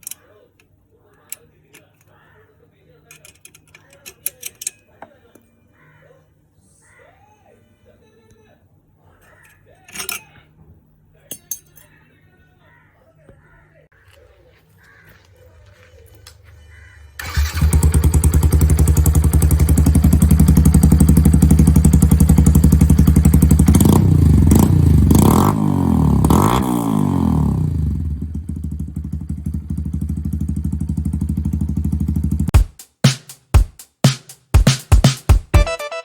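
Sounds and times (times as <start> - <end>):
motorcycle engine revving: 17.2 - 32.6
music beats: 32.5 - 36.0.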